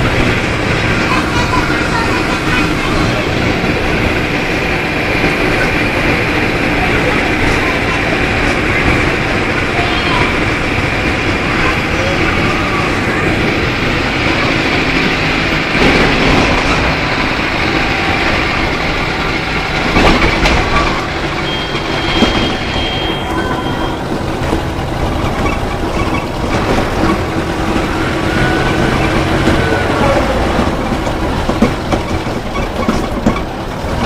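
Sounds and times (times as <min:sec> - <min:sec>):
bus diesel engine running: 0:00.0 - 0:34.0.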